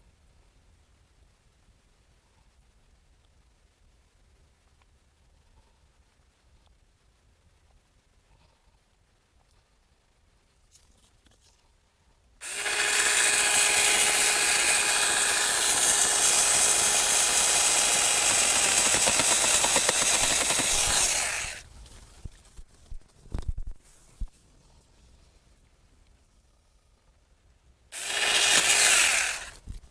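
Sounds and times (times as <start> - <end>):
electric chainsaw whining: 12.4 - 21.6, 28.0 - 29.6.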